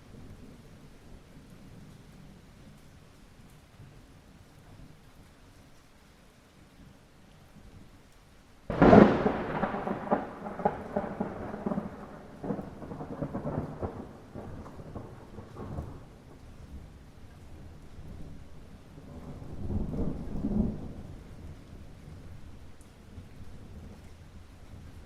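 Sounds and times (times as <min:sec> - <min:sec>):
faint rain hiss: 0:00.0 - 0:25.0
thunderclap and rumble: 0:08.7 - 0:25.0.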